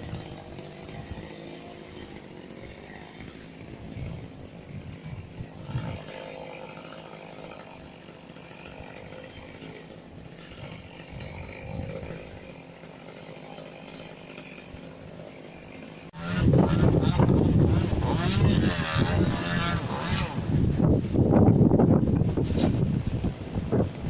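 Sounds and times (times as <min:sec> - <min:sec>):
chainsaw running: 0:00.0 - 0:24.0
wind gusting on microphone: 0:16.2 - 0:24.0.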